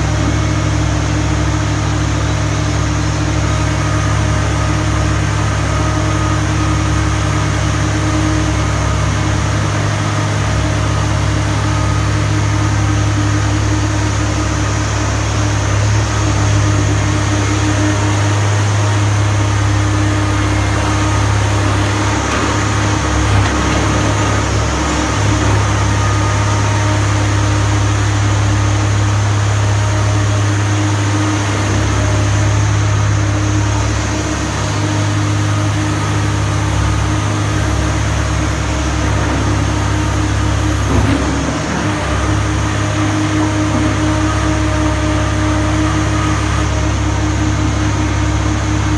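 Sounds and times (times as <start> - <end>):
diesel engine droning: 0.0 - 48.9.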